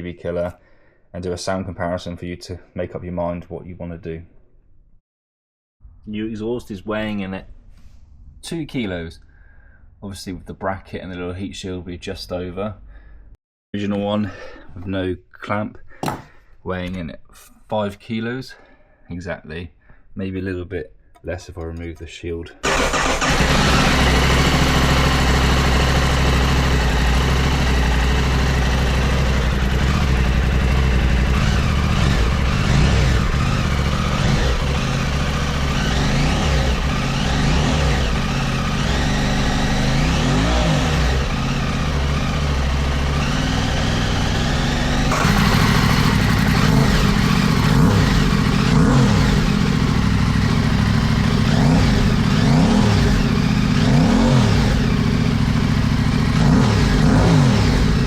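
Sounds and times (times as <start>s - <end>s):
motorcycle engine idling and revving: 22.6s - 58.0s.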